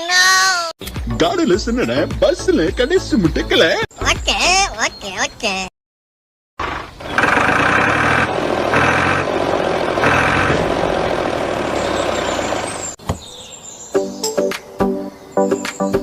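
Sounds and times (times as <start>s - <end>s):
truck engine running: 6.6s - 13.0s.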